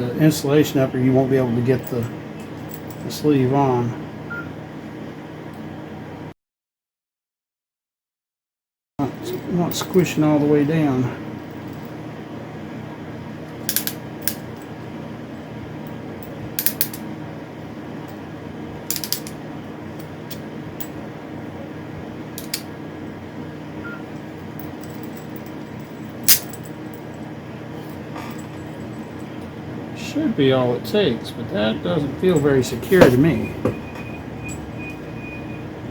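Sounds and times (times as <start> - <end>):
steady background hum: 0.0 - 6.3, 9.0 - 35.9
crimping tool clicking: 22.4 - 22.6.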